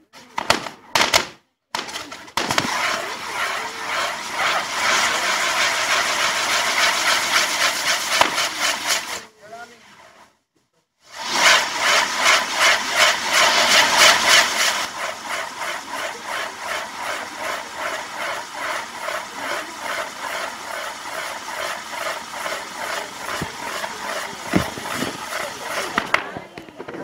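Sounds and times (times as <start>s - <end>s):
fireworks hissing: 0.0s - 10.4s, 11.0s - 27.0s
sharp pop: 0.3s - 3.1s, 8.1s - 9.2s.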